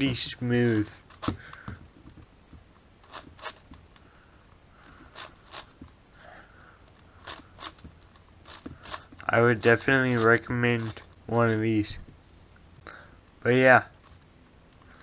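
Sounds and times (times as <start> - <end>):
puzzle cube plastic clicks: 3.0 - 4.0, 6.9 - 11.1.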